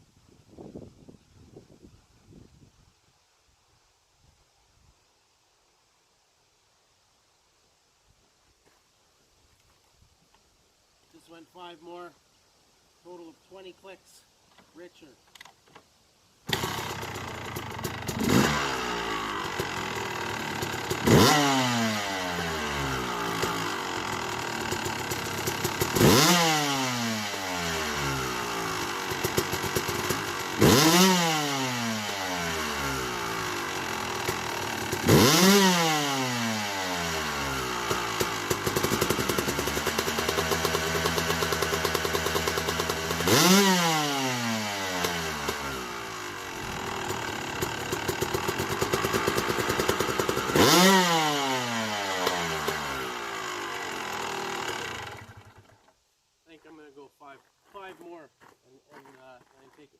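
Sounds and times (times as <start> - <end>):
motorcycle engine revving: 16.5 - 55.8.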